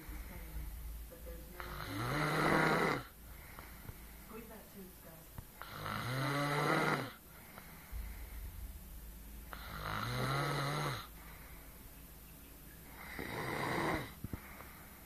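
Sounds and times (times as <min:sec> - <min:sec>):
quiet breathing: 0:00.0 - 0:15.0
woman snoring: 0:01.6 - 0:03.2, 0:05.6 - 0:07.2, 0:09.5 - 0:11.1, 0:13.0 - 0:14.2.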